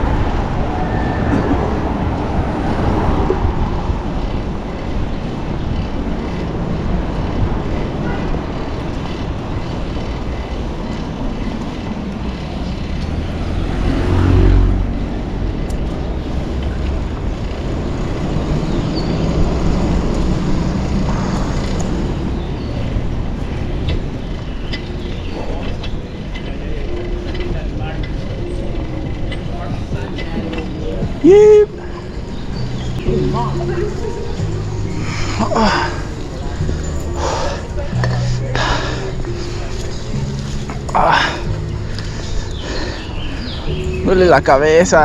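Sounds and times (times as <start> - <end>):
vehicle passing close by: 0.0 - 25.6
street traffic noise: 0.0 - 45.0.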